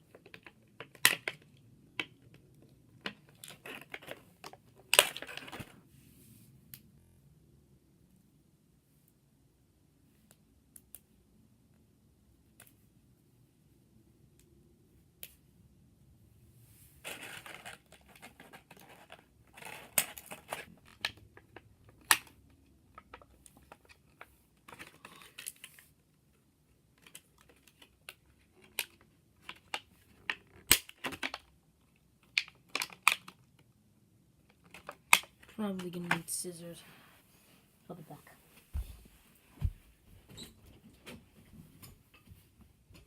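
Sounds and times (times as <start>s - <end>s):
plastic and card crinkling: 3.0s - 5.8s, 17.0s - 26.0s, 26.8s - 31.6s.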